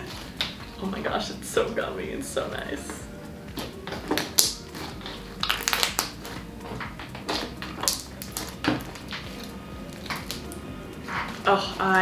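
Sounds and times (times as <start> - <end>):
slime squelching by hand: 3.5 - 12.0.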